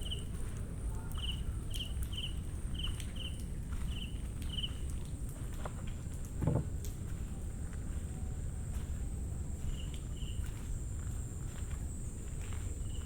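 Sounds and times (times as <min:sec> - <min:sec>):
footstep thump: 0:06.4 - 0:06.7.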